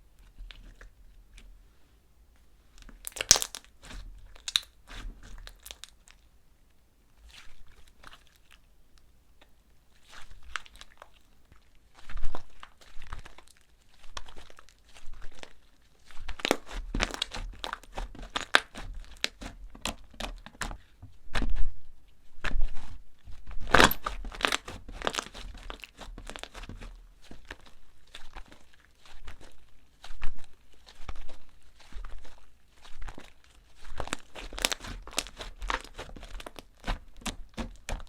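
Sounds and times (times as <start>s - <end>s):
dried clay crackling crushed: 2.7s - 6.3s, 12.0s - 38.0s.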